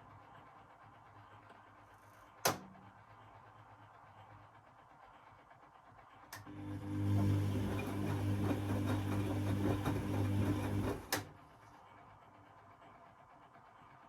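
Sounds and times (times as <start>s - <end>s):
washing machine motor humming: 6.4s - 11.2s.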